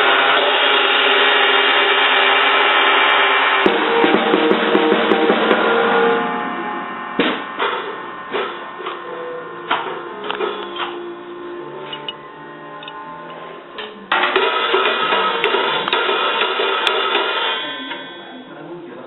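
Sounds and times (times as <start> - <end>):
child banging drum kit: 3.6 - 6.2, 14.1 - 17.8.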